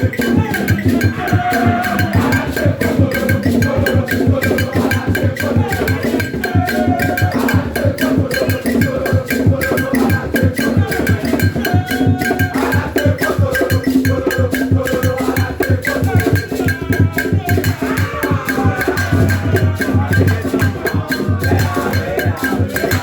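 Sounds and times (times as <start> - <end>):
loud music with heavy bass: 0.0 - 8.0.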